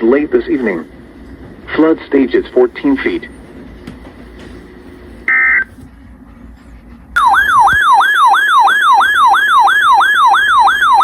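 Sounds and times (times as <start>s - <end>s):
electronic yelp siren: 5.3s - 5.7s, 7.2s - 11.0s.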